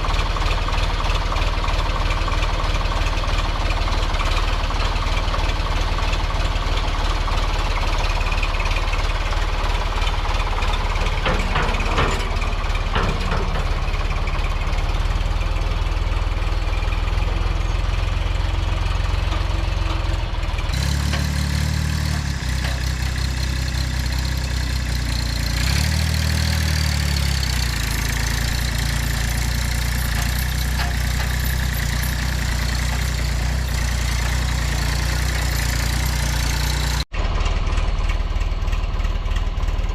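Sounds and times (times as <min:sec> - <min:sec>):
engine idling and revving: 0:00.0 - 0:39.9.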